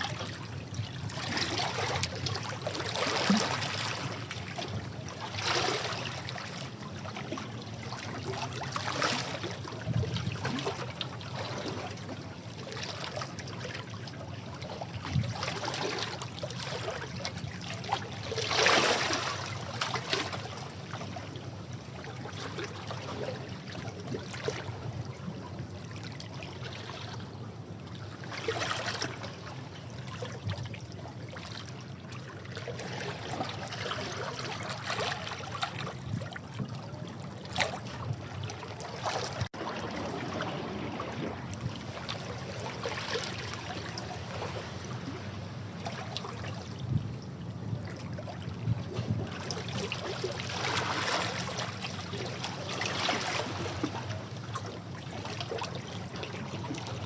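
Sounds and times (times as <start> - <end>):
sea waves breaking over rocks: 36.8 - 57.0.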